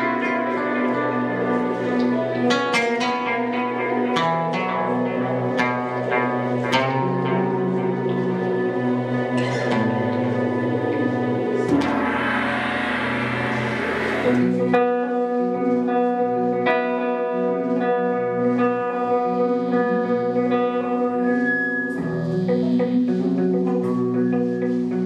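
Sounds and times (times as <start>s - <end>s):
low bass line: 0.0s - 14.8s
cymbal wash: 0.0s - 15.2s
plucked guitar melody: 0.0s - 25.0s.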